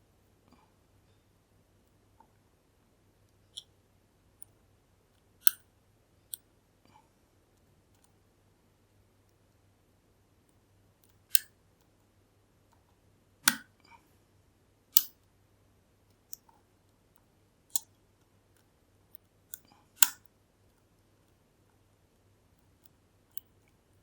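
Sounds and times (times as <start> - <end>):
lock pick clicking on pins: 5.4 - 5.6, 11.0 - 11.5, 13.5 - 13.7, 15.0 - 15.2, 19.5 - 20.3.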